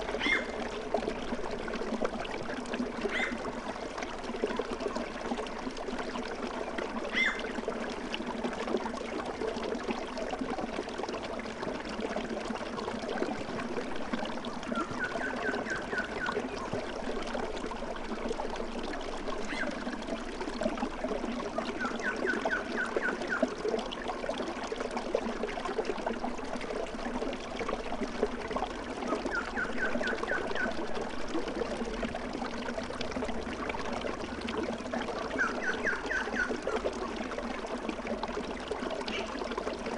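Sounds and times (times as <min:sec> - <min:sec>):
stream water trickling: 0:00.0 - 0:39.9
bird trilling chirps: 0:00.2 - 0:00.5.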